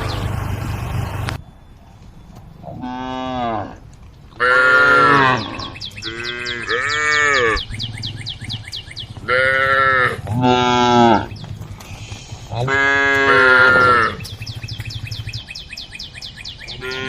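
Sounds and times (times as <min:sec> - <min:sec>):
cows mooing: 0:02.6 - 0:03.8, 0:04.4 - 0:14.4, 0:16.7 - 0:17.0.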